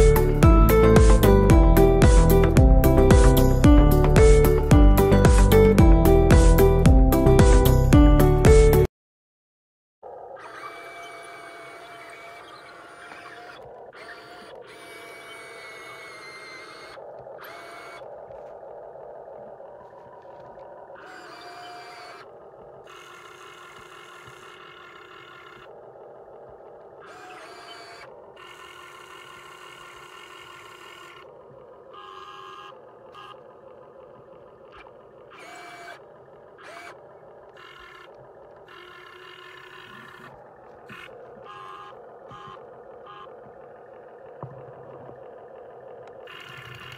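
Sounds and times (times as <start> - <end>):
small electric motors whining: 10.0 - 46.9.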